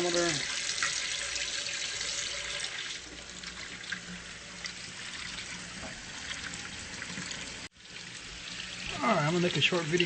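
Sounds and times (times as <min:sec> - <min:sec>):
tap running into sink: 0:05.7 - 0:07.4.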